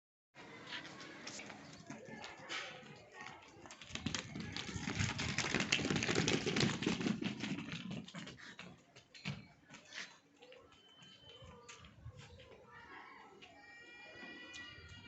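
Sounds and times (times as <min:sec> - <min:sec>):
rapid clatter of small taps: 0:01.9 - 0:09.4.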